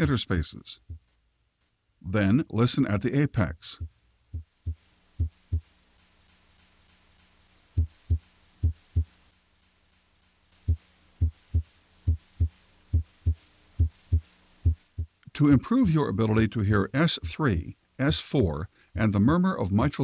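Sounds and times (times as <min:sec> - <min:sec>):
heartbeat through stethoscope: 0:00.8 - 0:01.1, 0:03.8 - 0:05.7, 0:07.8 - 0:09.1, 0:10.7 - 0:15.2.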